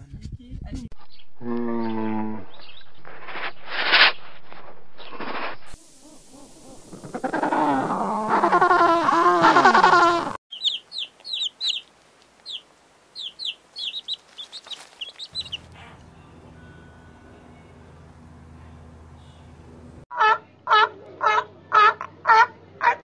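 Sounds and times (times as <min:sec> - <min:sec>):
wavering bird call: 0:10.5 - 0:11.8
high bird chirps: 0:10.5 - 0:12.6, 0:13.2 - 0:16.0.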